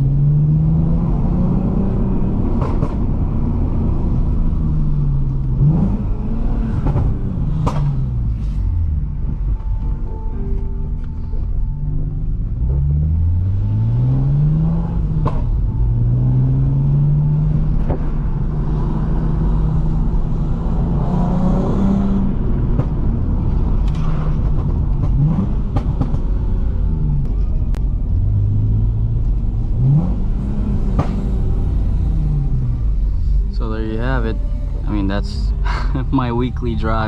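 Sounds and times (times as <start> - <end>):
car engine revving: 0.0 - 10.0, 11.9 - 37.0
exhaust pops and crackles: 22.7 - 26.4.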